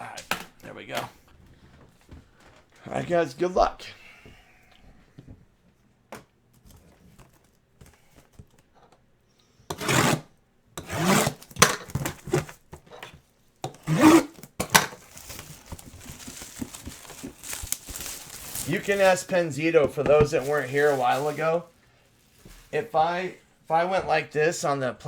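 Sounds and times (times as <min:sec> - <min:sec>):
plastic wrap tearing: 0:13.9 - 0:23.0
plastic wrap crinkling: 0:14.3 - 0:23.8.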